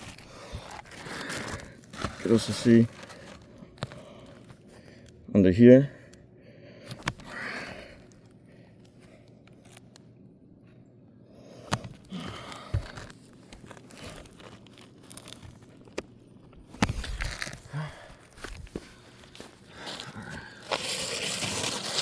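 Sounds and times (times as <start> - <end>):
roofing shingles scraping and crinkling: 0.0 - 3.6, 18.3 - 22.0.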